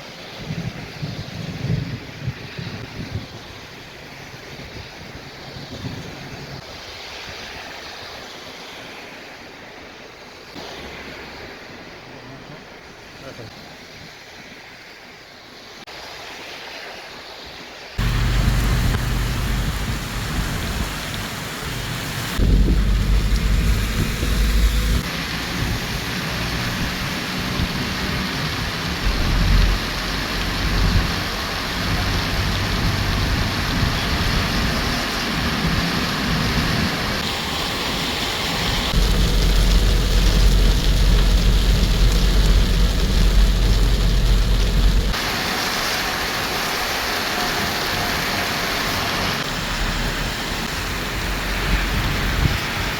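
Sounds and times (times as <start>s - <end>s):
thunder rumbling: 18.0s - 37.2s, 38.4s - 45.3s
heavy rain pouring: 18.0s - 52.9s.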